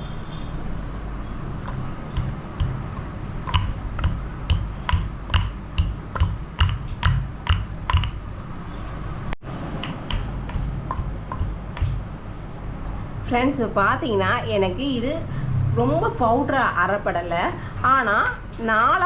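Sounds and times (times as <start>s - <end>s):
pestle pounding in a mortar: 1.6s - 8.4s, 9.8s - 12.1s.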